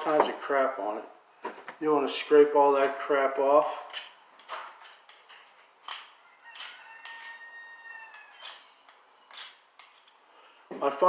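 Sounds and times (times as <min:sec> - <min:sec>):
metal tool scraping: 0:03.5 - 0:10.2
rooster crowing: 0:06.2 - 0:08.8.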